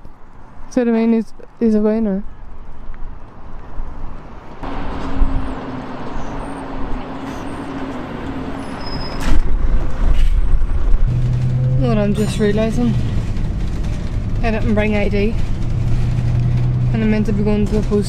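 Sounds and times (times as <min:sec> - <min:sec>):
large vehicle engine passing: 0:04.3 - 0:18.0
heavy low rumble: 0:04.6 - 0:08.7, 0:09.3 - 0:18.0.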